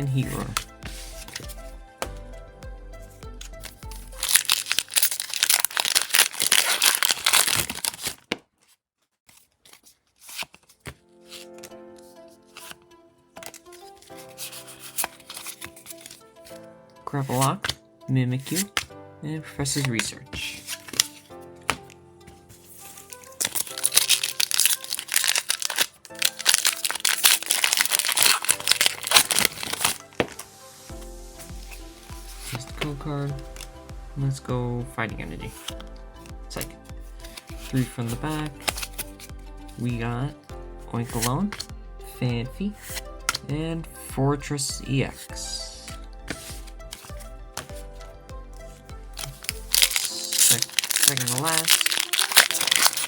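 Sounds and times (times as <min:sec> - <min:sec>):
background music: 0:00.0 - 0:07.9, 0:10.7 - 0:53.0
foil wrapper torn and crinkled: 0:03.6 - 0:11.7, 0:13.4 - 0:16.6, 0:20.4 - 0:21.3, 0:22.8 - 0:30.5, 0:33.4 - 0:33.8, 0:38.5 - 0:39.8, 0:48.6 - 0:53.0.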